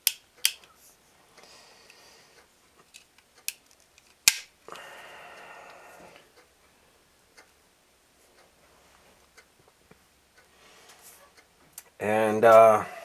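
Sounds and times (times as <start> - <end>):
pistol handling clicks: 2.9 - 4.5.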